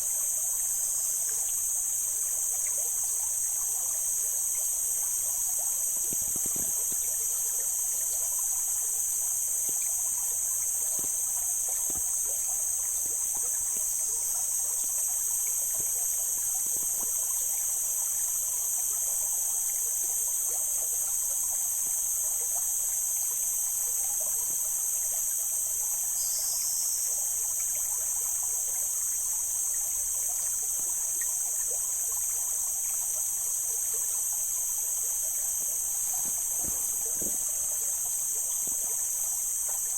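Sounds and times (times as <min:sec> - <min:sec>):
high-pitched hiss: 0:00.0 - 0:39.9
stream flowing over rocks: 0:34.3 - 0:39.9.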